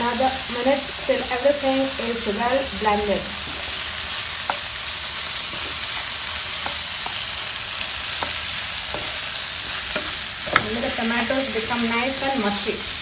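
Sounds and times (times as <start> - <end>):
vegetables sizzling in hot oil: 0.0 - 13.0
spatula tapping pan: 4.4 - 4.7, 5.4 - 11.0.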